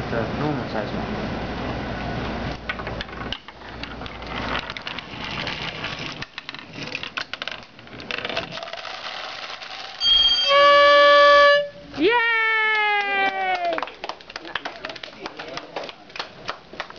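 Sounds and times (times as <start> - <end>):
marbles clicking and clattering: 2.7 - 10.4
air horn blast: 10.0 - 11.8.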